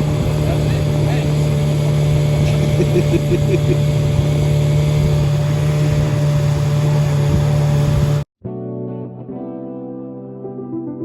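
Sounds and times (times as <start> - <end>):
van engine running: 0.0 - 8.3.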